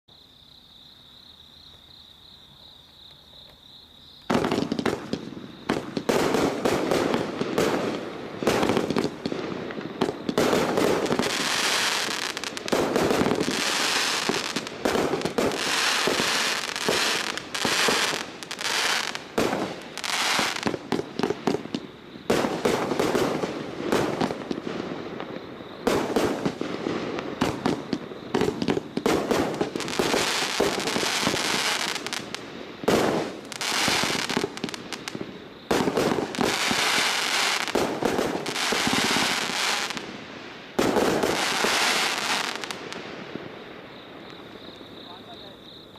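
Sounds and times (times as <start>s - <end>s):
crickets trilling: 0.1s - 45.9s.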